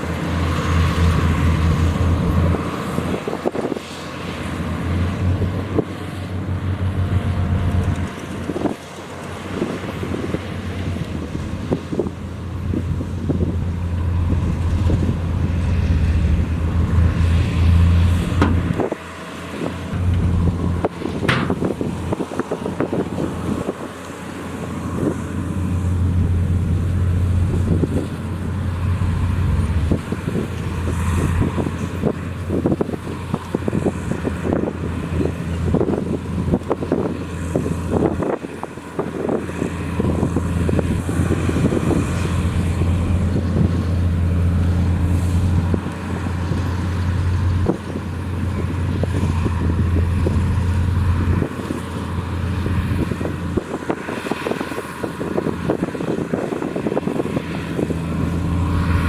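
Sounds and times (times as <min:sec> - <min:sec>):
diesel engine droning: 0:00.0 - 0:59.0
rattling and knocking: 0:20.0 - 0:22.2.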